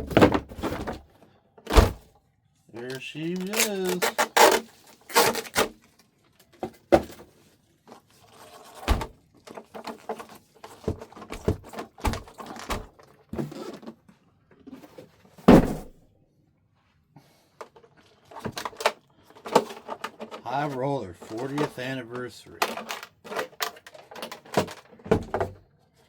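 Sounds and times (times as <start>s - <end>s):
packaging handling: 2.8s - 6.0s.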